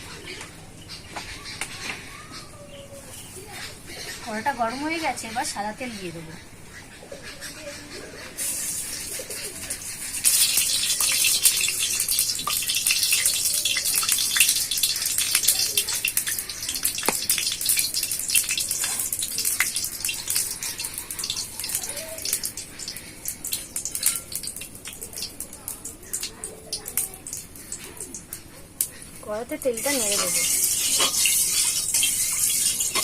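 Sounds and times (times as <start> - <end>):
oil sizzling and crackling: 8.4 - 33.0.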